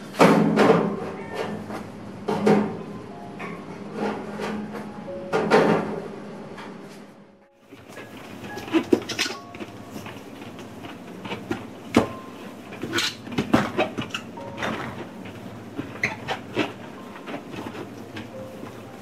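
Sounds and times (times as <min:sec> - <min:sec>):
household items clattering: 0:07.6 - 0:19.0.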